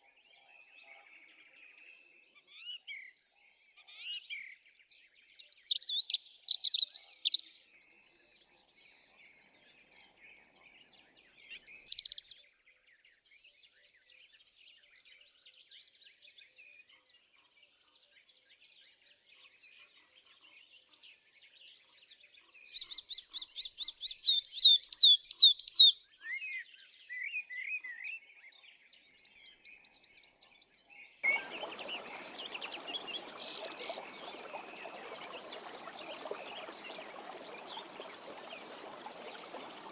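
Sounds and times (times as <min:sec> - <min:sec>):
songbirds singing: 0:00.0 - 0:14.0, 0:18.1 - 0:39.9
flowing water rushing: 0:31.2 - 0:39.9.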